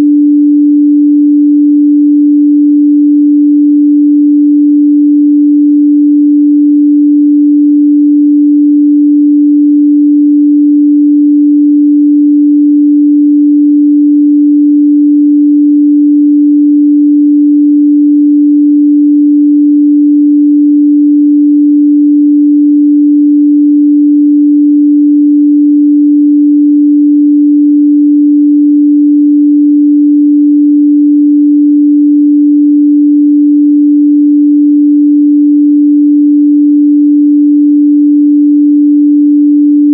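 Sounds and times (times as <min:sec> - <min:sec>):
sine wave test tone: 0:00.0 - 0:39.9.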